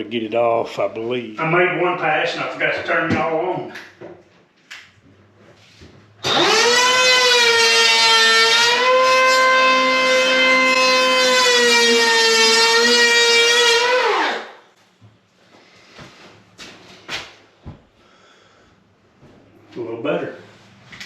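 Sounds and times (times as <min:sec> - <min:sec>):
electric hand planer whining: 0:06.2 - 0:14.6.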